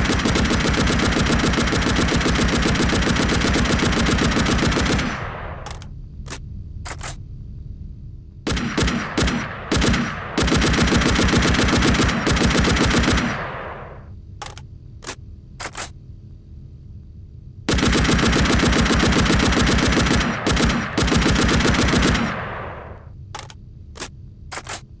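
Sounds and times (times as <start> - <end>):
machine gun firing bursts: 0.0 - 5.9, 8.5 - 14.1, 17.7 - 23.5.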